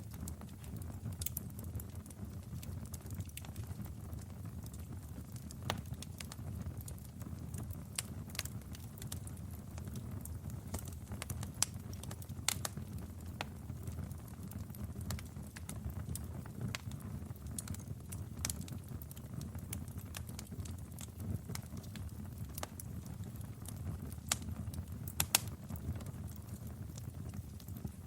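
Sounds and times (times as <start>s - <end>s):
fire crackling and popping: 0.0s - 28.0s
fire rumbling: 0.0s - 28.0s.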